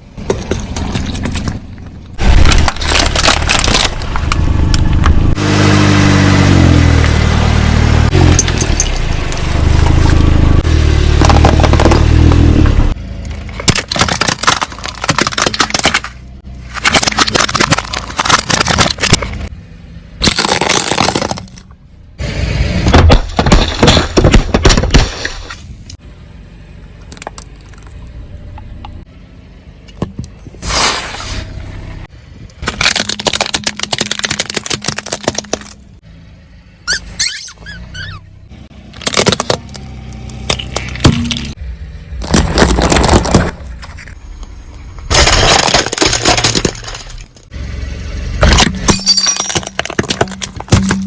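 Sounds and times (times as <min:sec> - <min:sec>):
tyres crunching brittle objects: 0:00.2 - 0:05.2, 0:13.1 - 0:19.5, 0:20.2 - 0:21.7, 0:32.5 - 0:36.0, 0:38.8 - 0:47.5, 0:48.4 - 0:51.0.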